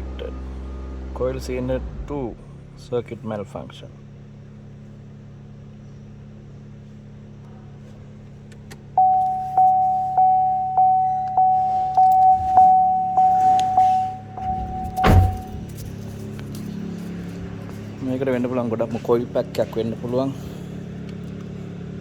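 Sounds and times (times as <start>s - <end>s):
steady low hum: 3.9s - 18.1s
car warning chime dinging: 9.0s - 15.8s
loud thump: 12.2s - 16.0s.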